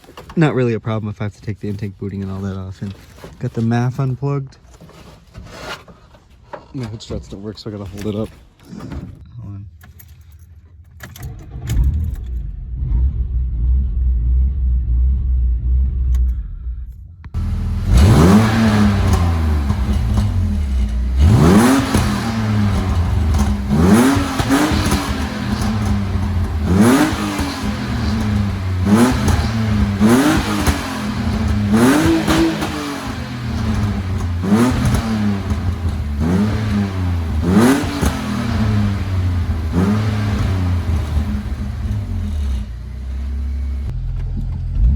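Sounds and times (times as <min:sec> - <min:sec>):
car engine idling and revving: 0:11.0 - 0:44.9.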